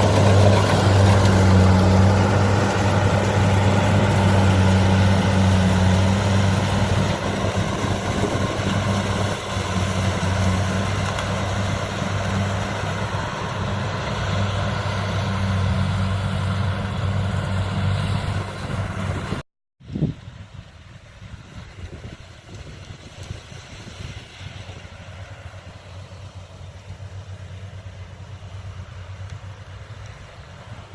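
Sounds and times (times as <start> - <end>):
diesel engine running under load: 0.0 - 19.4.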